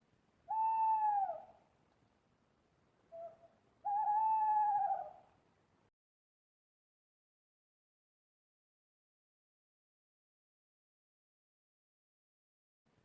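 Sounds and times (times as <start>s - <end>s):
owl hooting: 0.5s - 1.6s, 3.1s - 5.3s.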